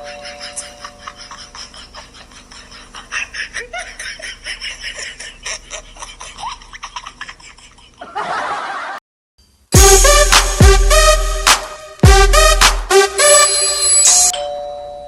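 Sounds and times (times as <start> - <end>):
person giggling: 0.0 - 9.0.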